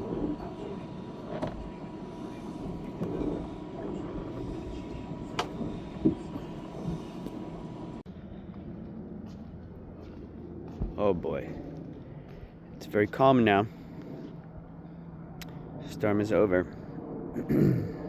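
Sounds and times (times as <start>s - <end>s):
storm wind rumbling: 0.0s - 8.0s.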